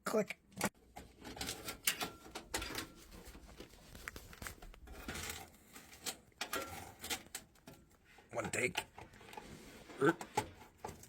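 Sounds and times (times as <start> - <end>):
computer parts clicking and rattling: 0.9 - 9.5.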